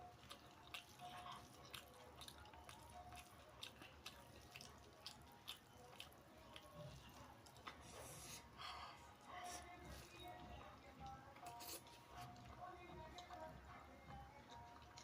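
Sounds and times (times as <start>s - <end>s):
wet chewing and mouth clicks: 0.0s - 8.6s, 9.6s - 15.0s.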